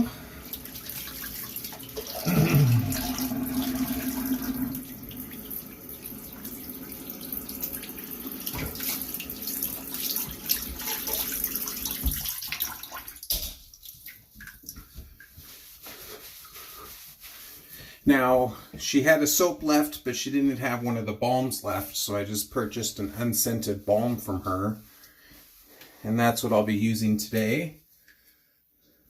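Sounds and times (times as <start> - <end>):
faucet falling hum: 0.0 - 12.1
water dripping: 0.4 - 15.6
tap running into sink: 8.4 - 9.3, 10.0 - 12.4.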